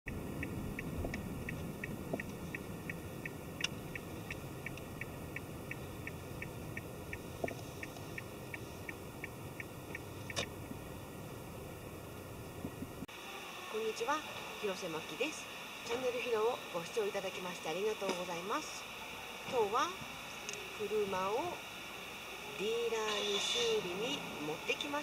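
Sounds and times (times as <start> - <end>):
turn signal ticking: 0.0 - 10.7
low rumble: 0.1 - 7.4.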